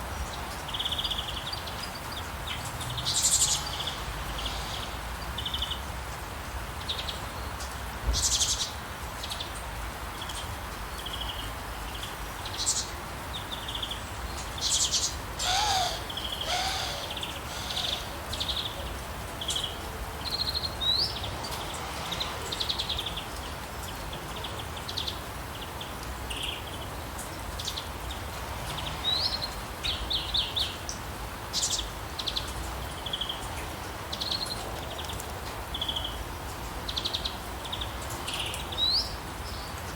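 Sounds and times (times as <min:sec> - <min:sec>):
steady outdoor hiss: 0:00.0 - 0:39.9
songbirds chirping and singing: 0:14.6 - 0:19.8
downward-gliding bird call: 0:15.4 - 0:18.7.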